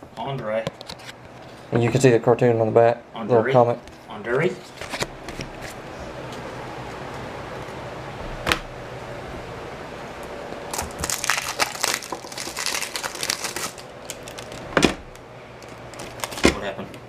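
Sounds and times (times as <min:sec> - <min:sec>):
wrapper crackling: 0:10.7 - 0:16.8.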